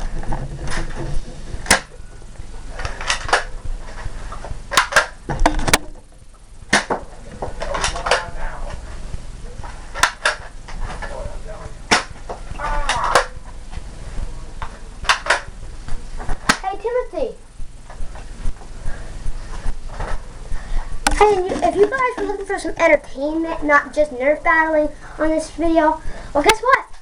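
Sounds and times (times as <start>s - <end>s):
foam darts striking things: 1.6s - 2.0s, 4.7s - 5.9s, 6.7s - 7.0s, 11.9s - 12.2s, 16.3s - 16.7s
toy blasters clicking and firing: 4.7s - 5.8s.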